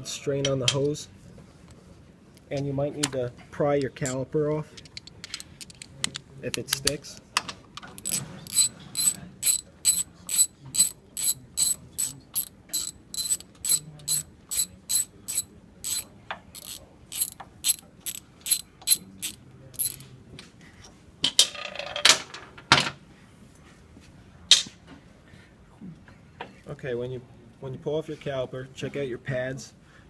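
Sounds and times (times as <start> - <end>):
ratchet wrench clicking: 5.2 - 6.2, 8.0 - 16.0, 16.6 - 20.0
scraping rattle: 8.0 - 16.0, 16.6 - 20.0.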